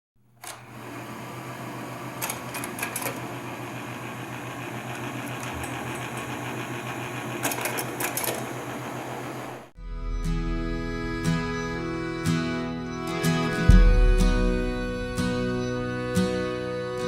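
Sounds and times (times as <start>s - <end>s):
drill rig engine running: 0.4s - 17.0s.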